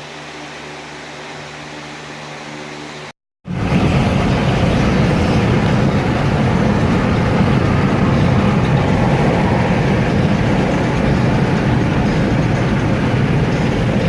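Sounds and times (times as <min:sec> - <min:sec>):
moving vehicle rumble: 0:03.5 - 0:14.0.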